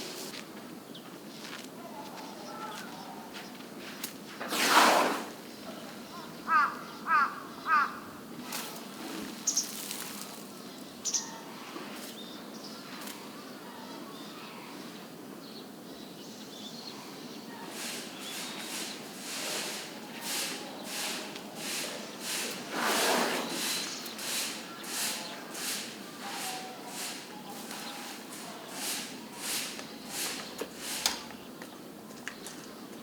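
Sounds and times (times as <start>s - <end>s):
elephant flinging sand: 4.4s - 5.4s, 17.7s - 30.5s
crow cawing: 6.2s - 8.2s.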